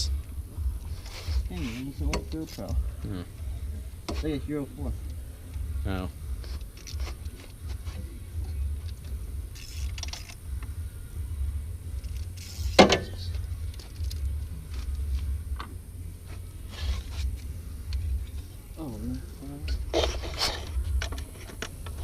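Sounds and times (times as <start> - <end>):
steady low rumble: 0.0 - 22.0
hand tools clicking and scraping: 0.8 - 2.8, 6.4 - 10.7, 11.9 - 18.5, 19.6 - 22.0.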